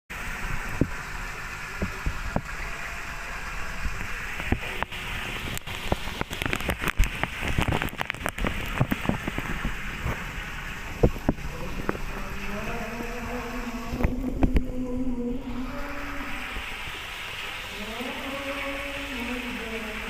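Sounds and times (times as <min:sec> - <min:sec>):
pond water splashing: 0:00.1 - 0:20.0.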